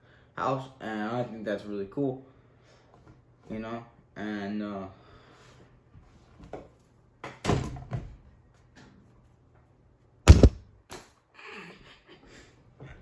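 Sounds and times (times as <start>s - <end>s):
thuds and knocks: 10.3s - 10.6s.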